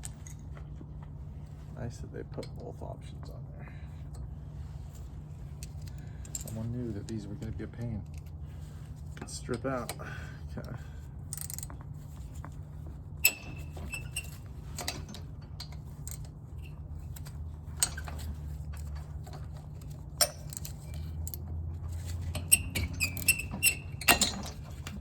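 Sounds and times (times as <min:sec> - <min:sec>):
steady low hum: 0:00.0 - 0:25.0
short high squeaks: 0:13.2 - 0:14.4, 0:22.3 - 0:24.8.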